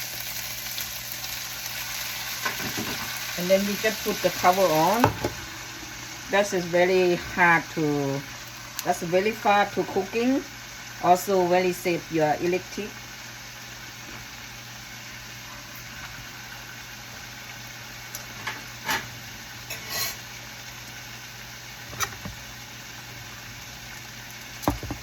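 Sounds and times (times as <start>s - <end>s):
vegetables sizzling in a pan: 0.0s - 25.0s
low hum: 4.1s - 8.9s.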